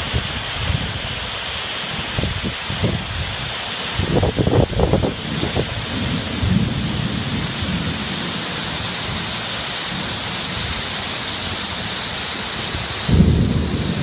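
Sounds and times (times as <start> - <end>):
heavy rain pouring: 0.0 - 14.0
low rumble of thunder: 4.2 - 11.8, 12.7 - 14.0.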